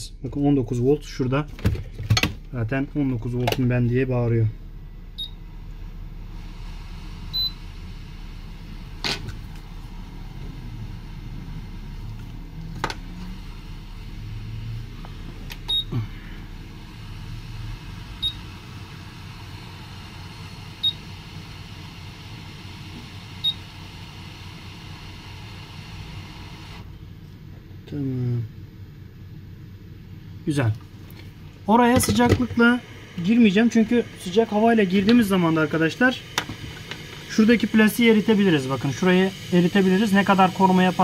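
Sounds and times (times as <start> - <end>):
equipment hum: 0.0 - 41.0.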